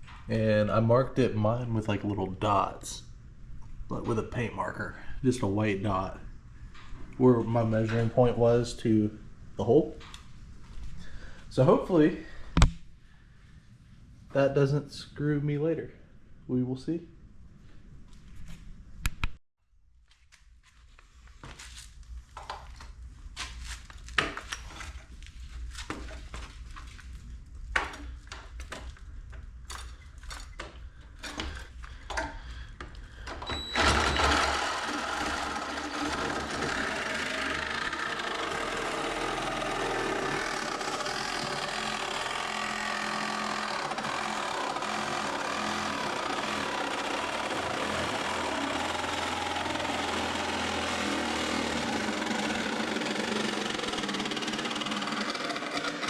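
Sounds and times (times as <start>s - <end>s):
power tool cutting sheet steel: 33.5s - 56.0s.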